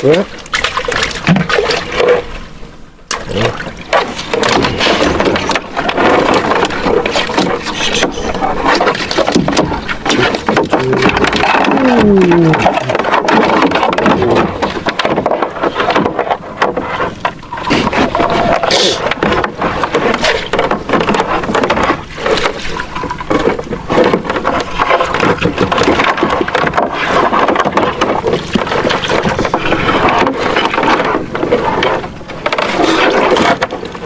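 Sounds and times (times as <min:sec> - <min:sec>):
lake water splashing: 0:00.0 - 0:34.0
knocks and rustles: 0:03.1 - 0:34.0.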